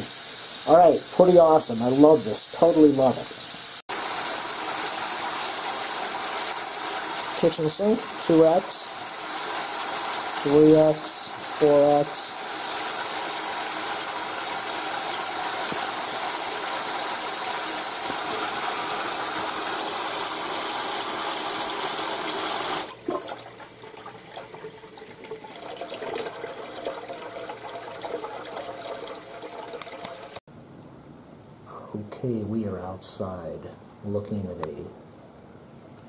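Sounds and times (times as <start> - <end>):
tap water running into sink: 3.4 - 30.4.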